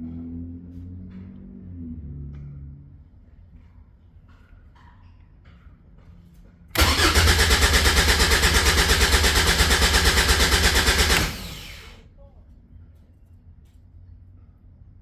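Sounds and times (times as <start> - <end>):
starter motor cranking: 6.8 - 12.0.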